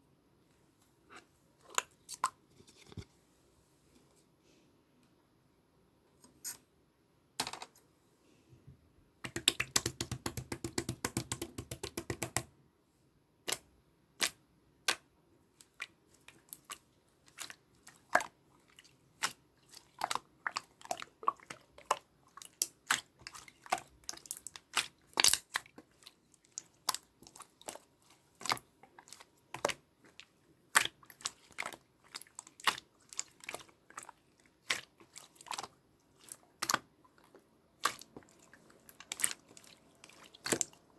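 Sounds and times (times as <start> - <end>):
slime squishing wet pops: 9.3 - 12.5, 19.2 - 40.8.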